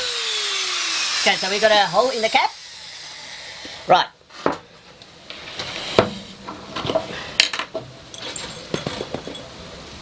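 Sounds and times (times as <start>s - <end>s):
glass jar clinks and knocks: 6.9s - 9.5s.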